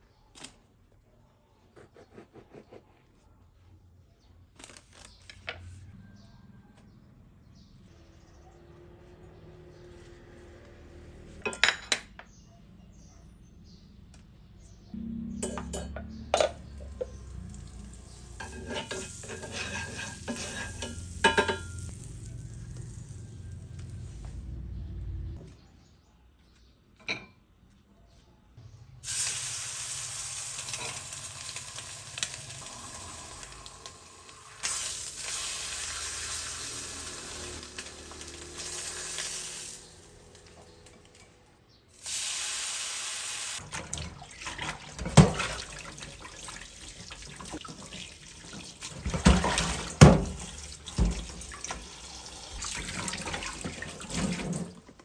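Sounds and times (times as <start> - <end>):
tap running water: 16.8 - 21.9, 43.6 - 55.0.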